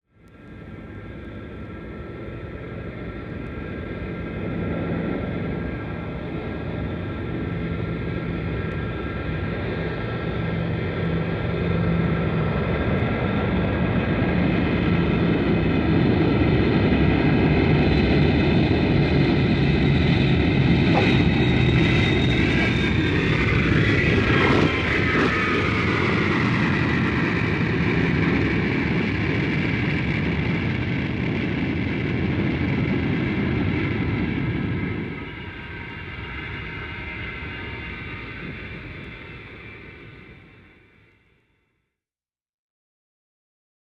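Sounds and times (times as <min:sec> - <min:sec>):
jet engine rumble: 0:00.1 - 0:41.5
jet turbine whine: 0:00.2 - 0:41.8.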